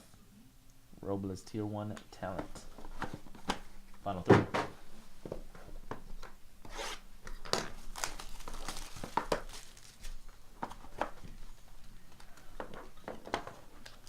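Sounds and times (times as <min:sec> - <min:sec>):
wrapper tearing and crinkling: 0:07.6 - 0:10.4, 0:13.8 - 0:14.0.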